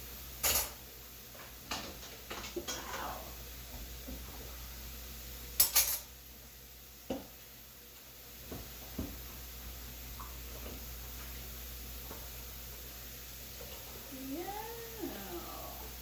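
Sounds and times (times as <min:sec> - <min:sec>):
dishes and utensils clattering: 0:05.6 - 0:06.1.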